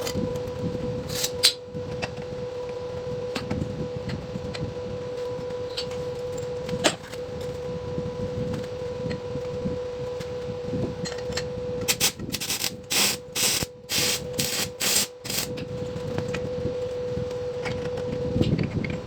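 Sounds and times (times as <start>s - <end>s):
steady hum: 11.8s - 15.7s.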